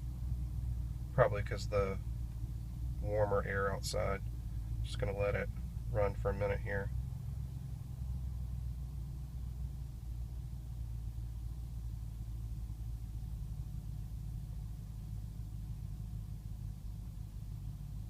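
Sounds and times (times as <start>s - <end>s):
car engine idling roughly: 0.0s - 18.0s.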